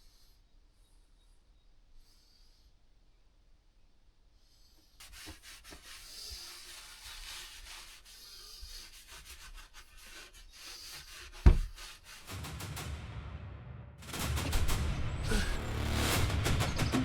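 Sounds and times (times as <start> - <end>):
rubbing strokes: 4.6 - 12.4
loud thump: 11.4 - 11.8.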